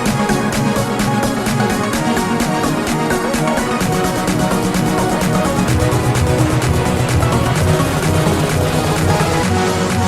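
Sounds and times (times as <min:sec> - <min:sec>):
music with fast even beat: 0:00.0 - 0:10.0.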